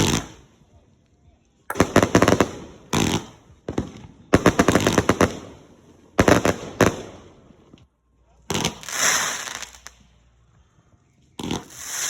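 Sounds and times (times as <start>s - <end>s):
fireworks cracking bangs: 1.7s - 7.2s.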